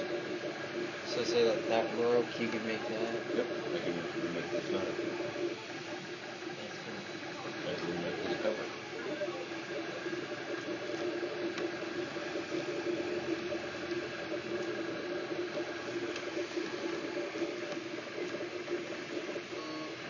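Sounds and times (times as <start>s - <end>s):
three d printer whirring: 0.0s - 20.0s.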